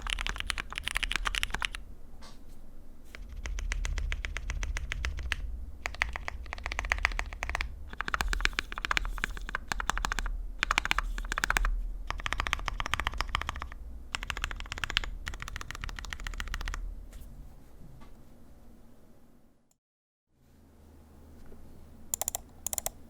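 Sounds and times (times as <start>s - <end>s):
mechanical keyboard keystroke clacks: 0.0s - 1.8s, 22.2s - 23.0s.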